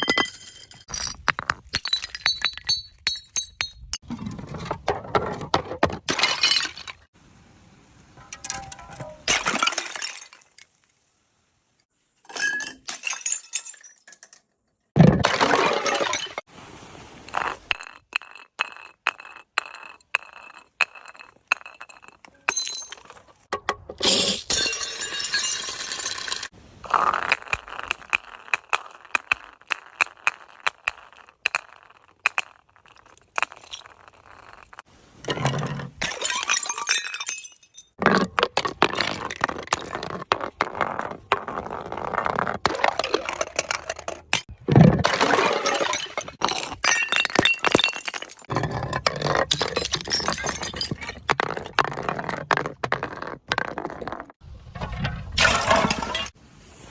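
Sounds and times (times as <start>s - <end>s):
glass bottles smashing: 0.0s - 4.0s, 6.1s - 7.1s, 8.3s - 10.7s, 12.2s - 14.4s, 15.0s - 16.5s, 17.3s - 40.6s, 42.6s - 52.1s, 54.3s - 56.4s
glass shards tinkling: 24.0s - 26.5s.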